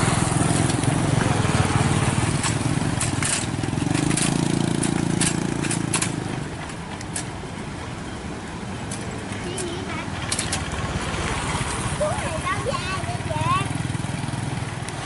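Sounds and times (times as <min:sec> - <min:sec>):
sharp clicks and knocks: 0:02.3 - 0:07.4, 0:08.8 - 0:10.8.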